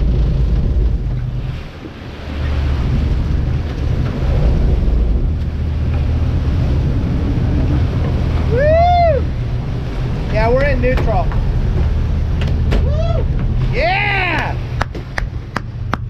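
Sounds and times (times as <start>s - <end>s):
boat engine running: 0.0s - 16.0s
water rushing past hull: 0.0s - 16.0s
wind buffeting microphone: 0.0s - 16.0s
rising and falling whoop: 8.4s - 9.4s, 12.8s - 14.6s.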